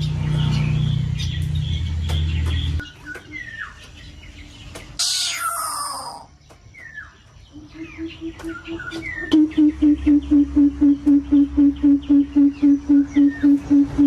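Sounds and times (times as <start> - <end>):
small birds chirping: 0.0 - 14.0
harsh descending bird call: 5.0 - 6.3
deep hooting bird call: 7.5 - 14.0.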